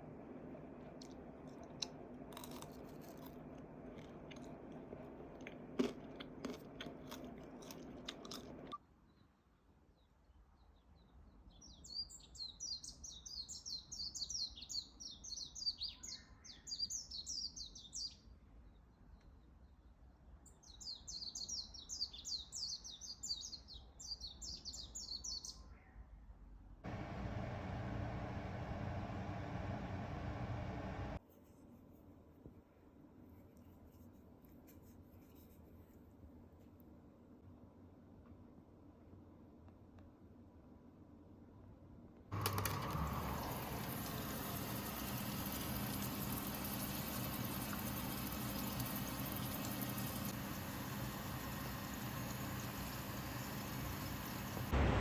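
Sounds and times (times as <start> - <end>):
crunching with sharp clicks: 1.0 - 8.8.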